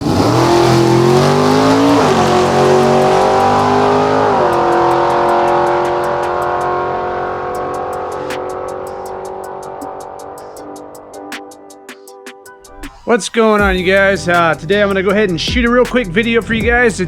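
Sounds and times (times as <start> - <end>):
car engine accelerating hard: 0.0 - 11.3.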